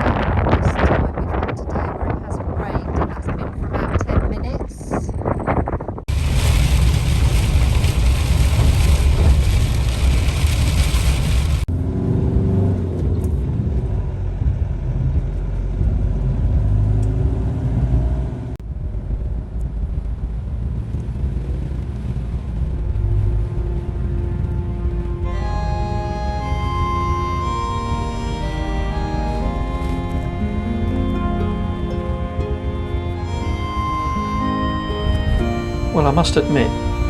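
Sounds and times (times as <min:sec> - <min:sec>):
vehicle engine and road rumble: 0:00.0 - 0:37.0
road and wind noise hiss: 0:06.1 - 0:37.0.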